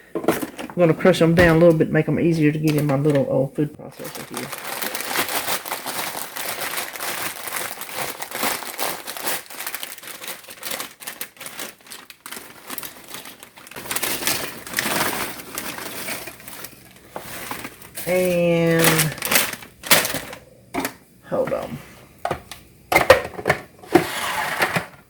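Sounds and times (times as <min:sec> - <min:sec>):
plastic bag crinkling: 0:00.3 - 0:21.0
pork rinds crunching: 0:04.0 - 0:18.2.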